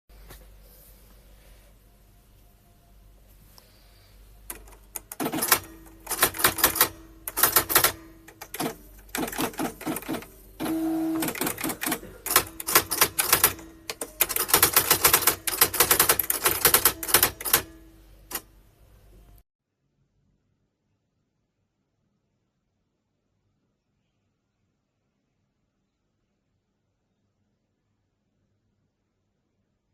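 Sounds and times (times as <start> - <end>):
typewriter strike clicks: 4.5 - 18.5.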